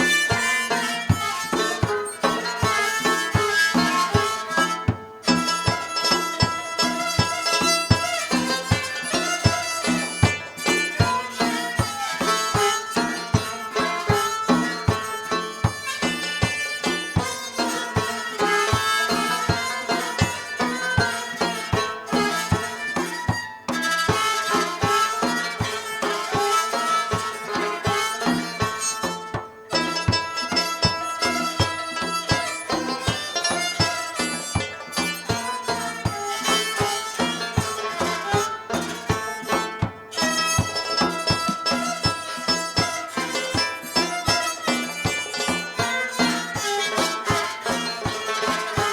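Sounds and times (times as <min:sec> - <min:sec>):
plucked string notes: 0:00.0 - 0:48.9
sustained reedy tone: 0:00.0 - 0:48.9.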